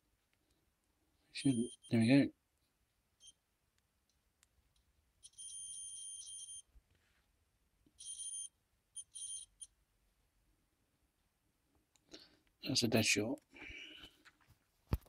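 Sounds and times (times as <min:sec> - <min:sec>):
multimeter continuity buzzer beeping: 0:01.4 - 0:02.0, 0:05.2 - 0:06.7, 0:08.0 - 0:09.8.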